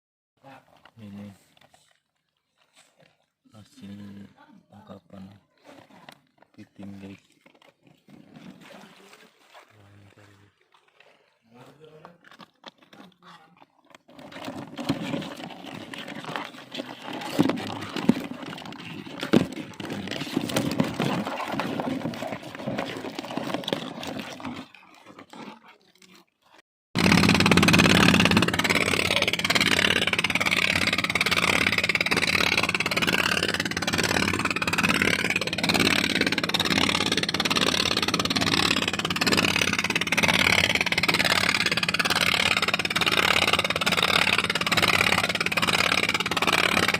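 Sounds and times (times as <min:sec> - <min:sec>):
knocks and clicks of handling: 0:14.0 - 0:24.4
engine running steadily: 0:27.0 - 0:46.9.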